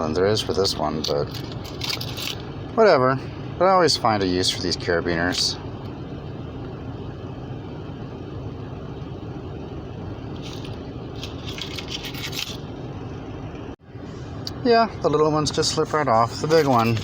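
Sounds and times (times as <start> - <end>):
steady low hum: 0.0 - 17.0
carabiners clinking and scraping: 0.4 - 2.5, 10.3 - 12.7, 16.0 - 17.0.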